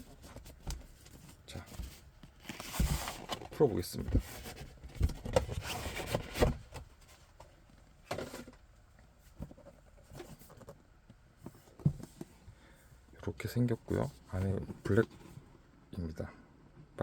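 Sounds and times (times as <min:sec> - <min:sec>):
cardboard packaging rustling: 0:00.1 - 0:07.3.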